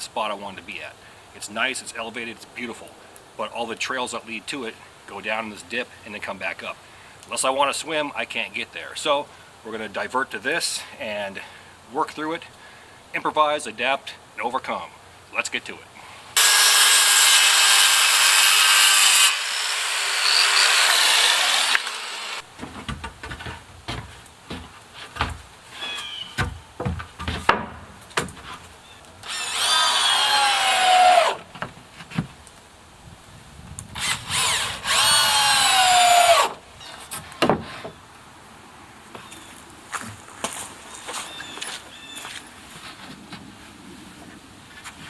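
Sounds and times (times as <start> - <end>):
power tool cutting wood: 16.4 - 22.4, 29.2 - 31.4, 34.0 - 36.6
wood knocking and handling: 22.5 - 28.7.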